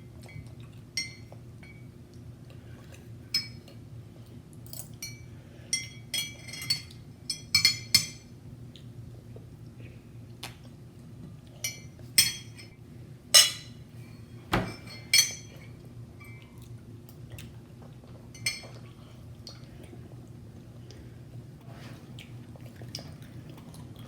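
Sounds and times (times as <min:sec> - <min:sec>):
faint steady hum: 0:00.0 - 0:24.0
cutlery and dishes clinking: 0:13.4 - 0:13.8.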